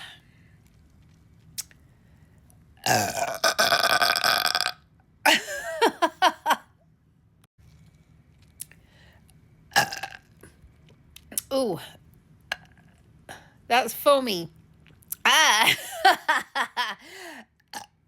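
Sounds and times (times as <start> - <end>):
woman burping: 2.8 - 4.7.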